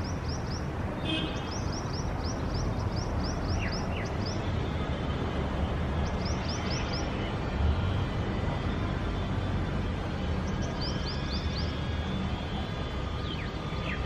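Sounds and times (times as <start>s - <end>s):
bird chirping: 0.0s - 4.4s
distant city traffic rumble: 0.0s - 14.0s.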